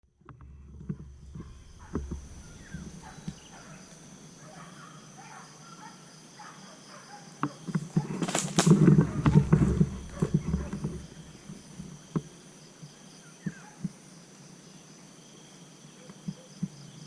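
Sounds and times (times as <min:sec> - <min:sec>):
thumps and rustling near microphone: 0:00.2 - 0:04.1, 0:07.4 - 0:12.3
faint chirps: 0:00.2 - 0:08.3
sharp cracks: 0:07.4 - 0:12.0.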